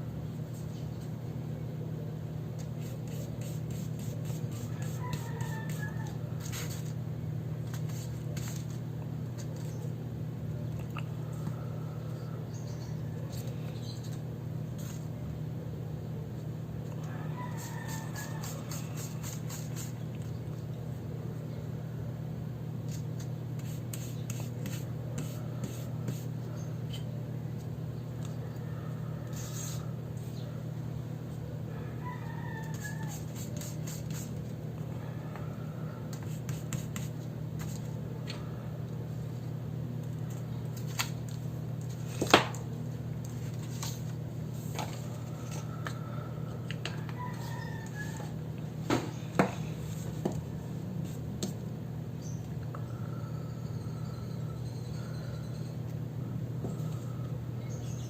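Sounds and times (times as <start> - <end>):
steady low hum: 0.0 - 58.0
rooster calls: 4.5 - 6.8, 16.9 - 19.9, 28.3 - 30.7, 31.6 - 33.6, 45.0 - 48.5.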